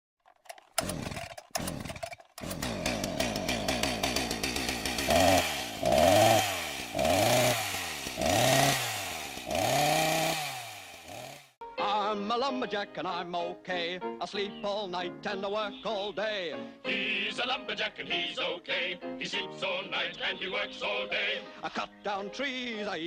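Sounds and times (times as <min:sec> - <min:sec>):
chainsaw engine revving: 0:00.2 - 0:11.6.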